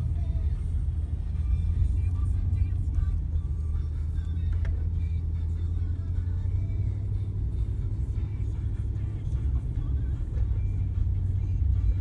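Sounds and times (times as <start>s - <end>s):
pickup truck rumbling: 0.0s - 12.0s.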